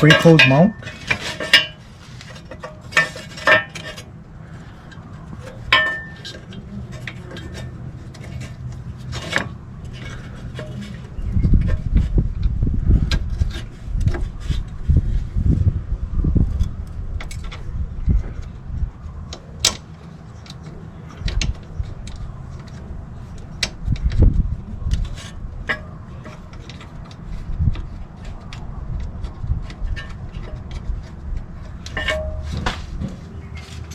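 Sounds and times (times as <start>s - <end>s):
low thumps and handling rumble: 0.0s - 33.9s
metallic clicks of tools and bolts: 24.9s - 32.8s.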